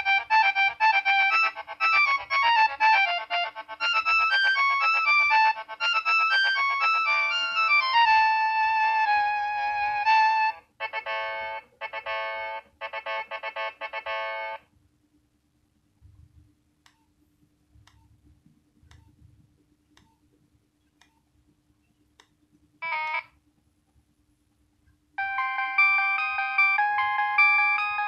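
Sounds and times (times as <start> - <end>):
phone electronic ringtone: 0.0 - 14.6, 25.2 - 28.0.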